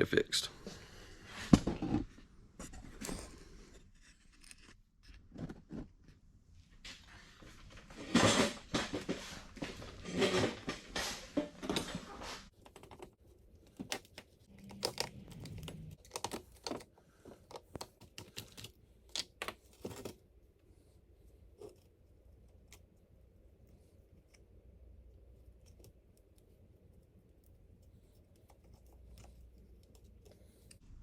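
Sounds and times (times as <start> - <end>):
clattering and rustling: 6.8 - 14.1.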